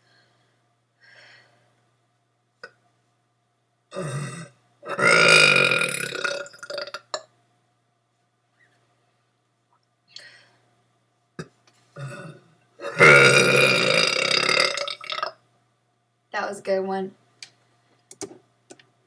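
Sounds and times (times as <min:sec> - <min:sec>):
person burping: 0:03.9 - 0:07.2, 0:11.4 - 0:15.4.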